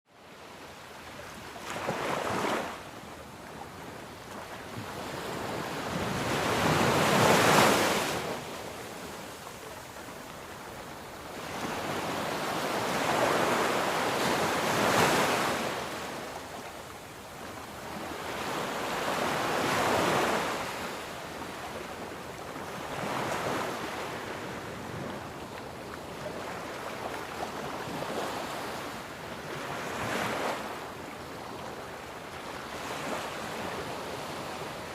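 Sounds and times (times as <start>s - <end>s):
ocean waves breaking on shore: 0.2s - 34.9s.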